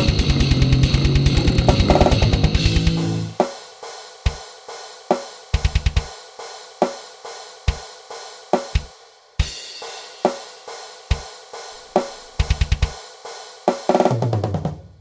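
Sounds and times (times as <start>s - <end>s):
kick drum strokes: 0.0s - 3.6s, 5.1s - 6.2s, 11.1s - 13.0s
drum kit playing: 0.0s - 15.0s.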